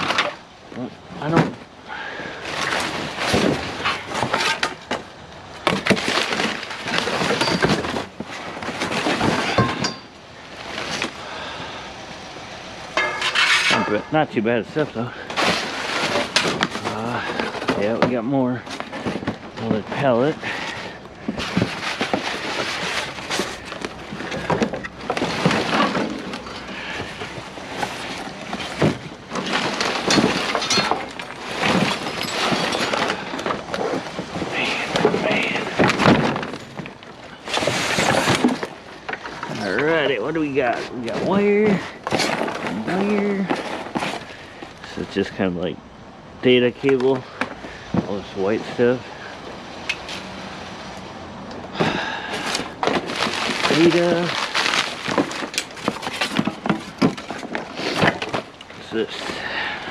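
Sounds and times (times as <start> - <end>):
debris being shifted by hand: 0.0 - 11.6, 12.9 - 45.0, 51.7 - 59.9
metal rattling and scraping: 2.4 - 11.3, 12.1 - 45.6, 51.7 - 59.9
scrap metal clanking: 2.4 - 11.6, 12.9 - 45.4.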